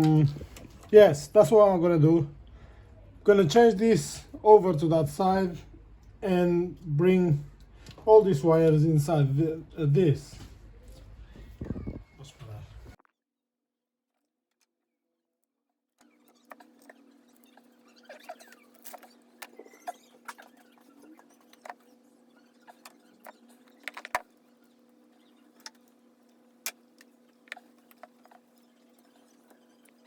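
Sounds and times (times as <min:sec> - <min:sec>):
faint clicks and rustles of wires: 0:00.0 - 0:01.6, 0:06.8 - 0:09.0, 0:10.2 - 0:13.0, 0:16.0 - 0:30.0.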